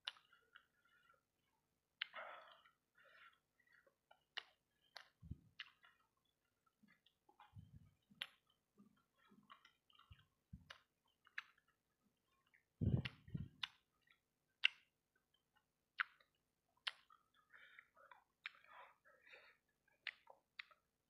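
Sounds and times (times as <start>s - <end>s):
chewing with wet mouth clicks: 0.0s - 1.2s, 1.9s - 21.0s
low soft thumps: 12.8s - 13.6s.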